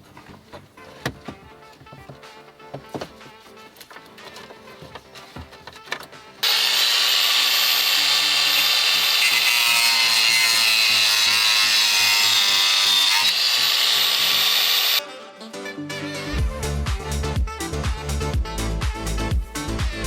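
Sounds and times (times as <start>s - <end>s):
quiet background music: 0.0s - 6.4s
power tool grinding: 6.4s - 15.0s.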